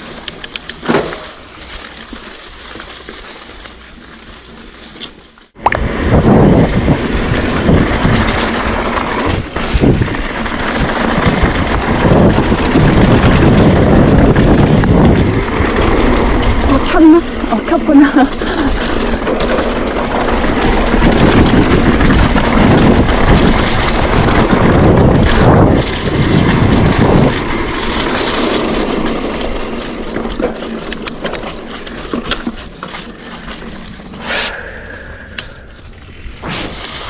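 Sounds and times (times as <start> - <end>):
bike clicks and knocks: 0.0 - 5.5, 18.2 - 34.2
tyres and bike rattling: 0.0 - 36.4
wind on microphone: 5.6 - 27.8.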